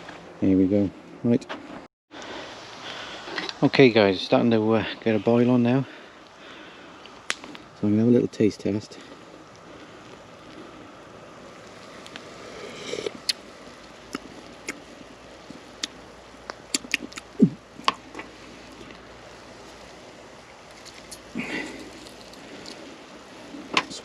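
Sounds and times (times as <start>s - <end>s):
soup boiling hiss: 2.1s - 24.0s
person sipping: 11.8s - 13.4s.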